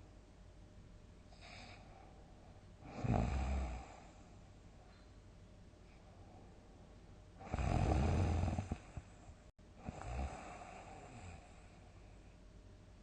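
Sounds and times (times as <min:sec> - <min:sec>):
person snoring: 0:02.8 - 0:04.1, 0:07.4 - 0:09.1, 0:09.8 - 0:11.5.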